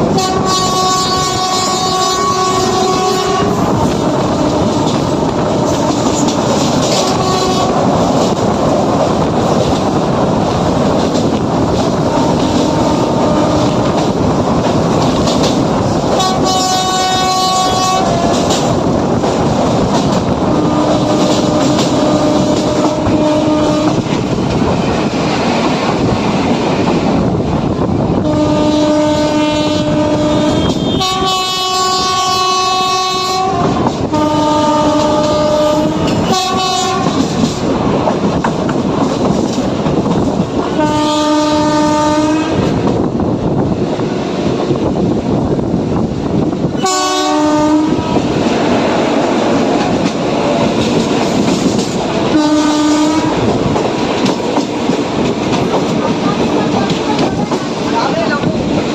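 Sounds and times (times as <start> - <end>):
train horn blasts: 0.0 - 8.0, 12.1 - 14.0, 16.1 - 18.7, 20.4 - 24.1, 28.2 - 37.5, 40.6 - 42.7, 46.8 - 48.2, 52.2 - 53.5
train wheels clattering: 0.0 - 27.7, 33.1 - 46.9, 47.8 - 58.9.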